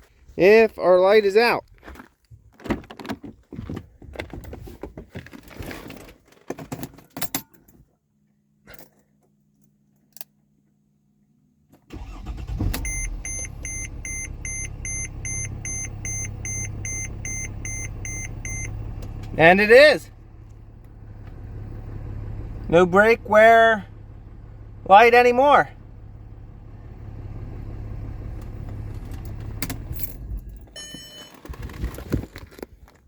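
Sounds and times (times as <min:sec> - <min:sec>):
diesel engine starting and idling: 0:11.9 - 0:32.0
dashboard warning chime beeping: 0:12.0 - 0:19.5, 0:30.7 - 0:31.4.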